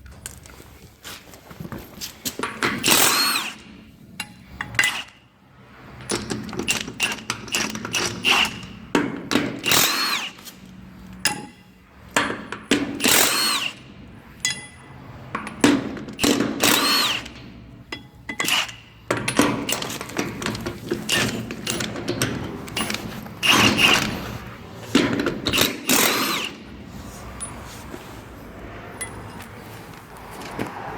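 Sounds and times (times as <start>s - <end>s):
impact wrench hammering: 2.4s - 5.2s, 6.0s - 10.4s, 11.3s - 11.6s, 12.2s - 14.8s, 15.4s - 26.8s.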